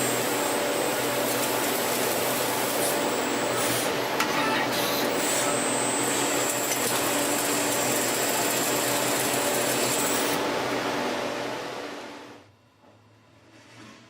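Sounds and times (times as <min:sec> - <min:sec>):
lathe machine running: 0:04.8 - 0:12.0.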